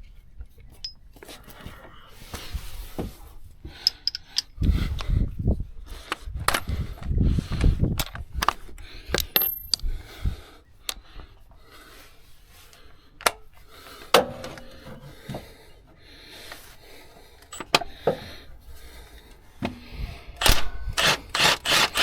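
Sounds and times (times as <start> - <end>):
rumbling handling noise: 0.8 - 10.1
metal tools clinking: 3.8 - 4.6, 8.0 - 9.8.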